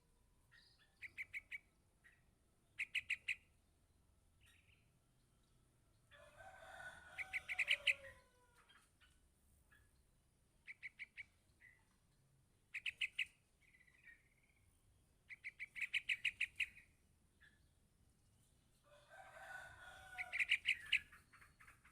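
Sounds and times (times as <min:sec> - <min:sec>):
bird chick begging chirps: 0:00.5 - 0:03.5, 0:07.2 - 0:09.9, 0:10.6 - 0:11.8, 0:12.7 - 0:14.6, 0:15.3 - 0:17.6, 0:20.0 - 0:21.9.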